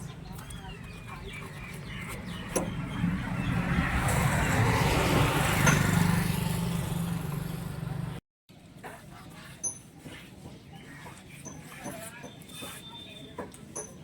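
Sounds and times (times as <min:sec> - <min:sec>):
vehicle engine running: 0:00.0 - 0:08.2.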